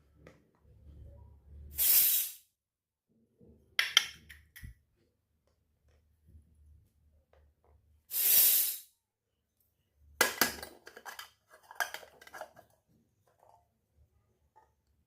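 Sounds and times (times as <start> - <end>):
short sharp hiss: 1.8 - 2.5, 8.1 - 8.9
toy kitchenware clinking: 10.2 - 13.6.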